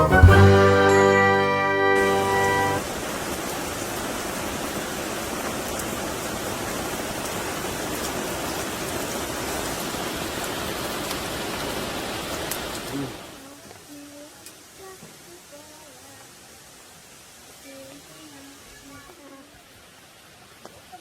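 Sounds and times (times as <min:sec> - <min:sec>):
water rushing: 0:00.0 - 0:14.3.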